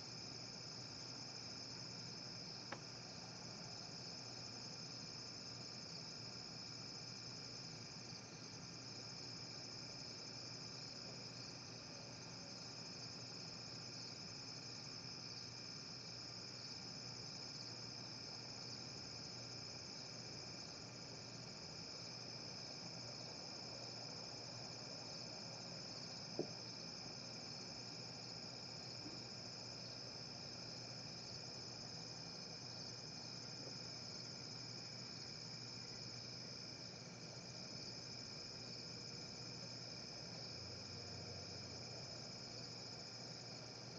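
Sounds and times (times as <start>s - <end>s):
crickets trilling: 12.3s - 43.9s.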